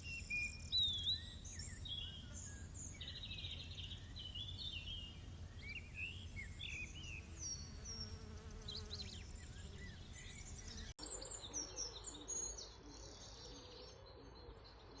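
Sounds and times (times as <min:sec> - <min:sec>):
small birds chirping: 0:00.0 - 0:15.0
insects buzzing: 0:05.8 - 0:10.9.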